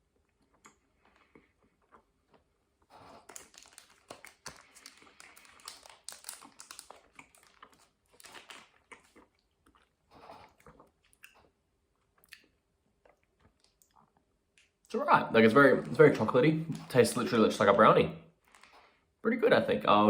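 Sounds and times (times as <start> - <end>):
person crunchy chewing: 0.2 - 14.2.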